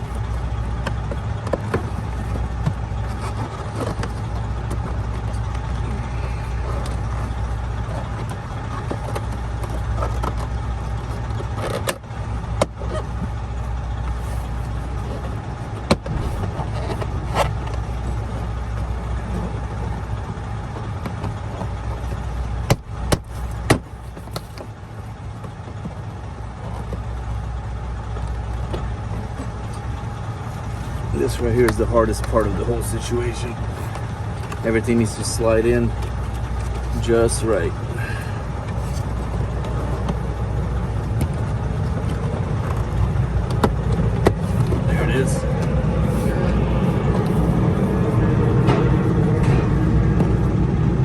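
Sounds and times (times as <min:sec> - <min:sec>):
engine idling hum: 0:00.0 - 0:51.0
plastic parts knocking and clicking: 0:21.0 - 0:24.7.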